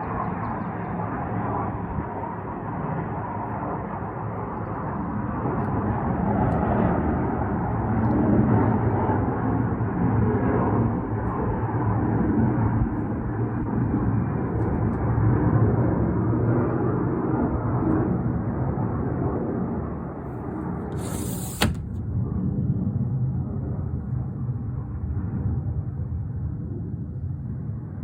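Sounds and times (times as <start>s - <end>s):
low droning rumble from sky: 0.0s - 20.8s, 22.0s - 28.0s.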